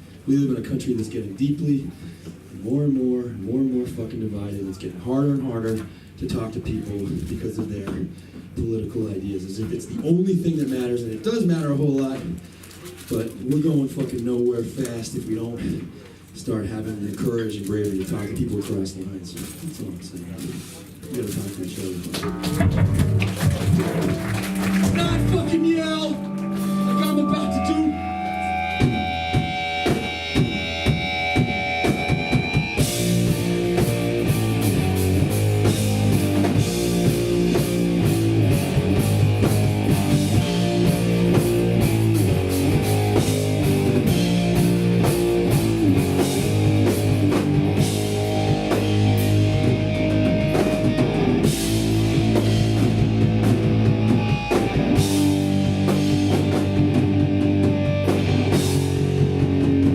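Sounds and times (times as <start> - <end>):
hardcore punk band playing: 22.1 - 59.9
drum hits: 22.2 - 25.6, 28.7 - 59.9
held guitar notes: 22.2 - 59.9.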